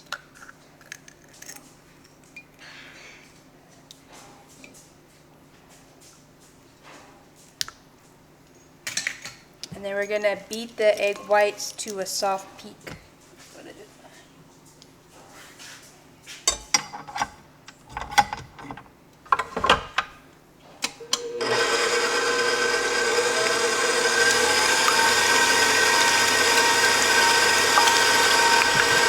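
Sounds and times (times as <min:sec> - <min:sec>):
electric mixer running: 0:21.1 - 0:29.0.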